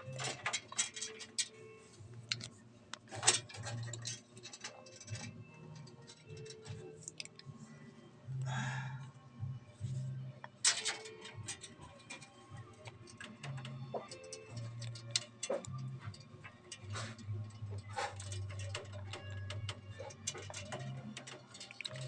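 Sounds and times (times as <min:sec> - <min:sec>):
hands handling cable connectors: 0:00.0 - 0:07.5.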